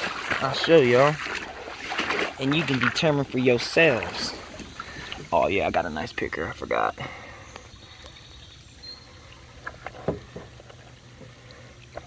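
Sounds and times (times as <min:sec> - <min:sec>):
creek water trickling: 0:00.0 - 0:12.0.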